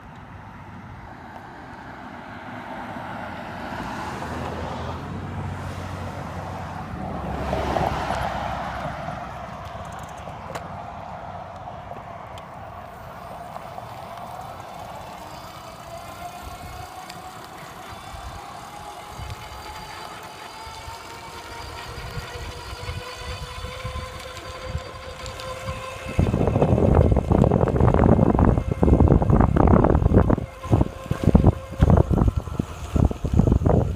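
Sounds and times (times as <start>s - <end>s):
electric bike motor whining: 0.0s - 33.9s
vehicle passing by: 0.0s - 33.9s
wind on microphone: 20.6s - 33.9s.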